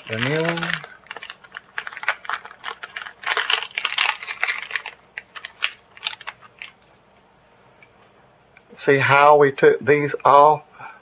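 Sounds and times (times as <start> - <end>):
plastic wrapper crinkling: 0.0 - 6.9.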